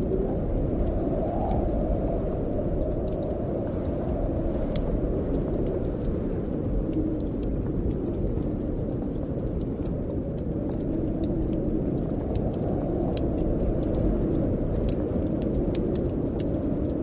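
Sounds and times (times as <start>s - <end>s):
low rush of wind: 0.0s - 17.0s
wood fire crackling and popping: 0.0s - 17.0s.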